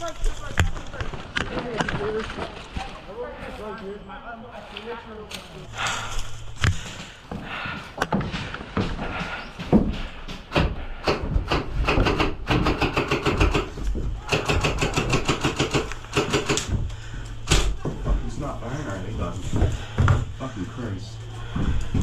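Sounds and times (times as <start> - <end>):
airsoft rifle automatic bursts: 11.8 - 16.7.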